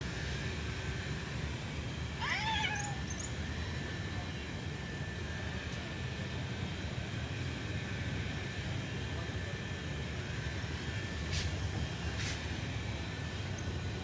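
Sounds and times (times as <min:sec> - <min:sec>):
cat meowing: 0:02.2 - 0:03.2.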